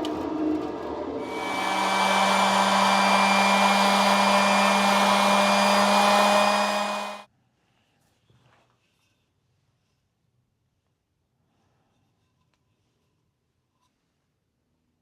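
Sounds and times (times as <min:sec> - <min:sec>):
power tool motor whirring: 0:01.2 - 0:07.3.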